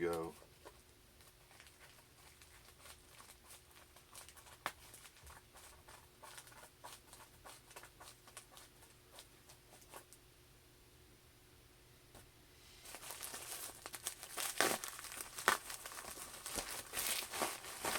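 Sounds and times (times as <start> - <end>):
package rustling: 12.8 - 17.9.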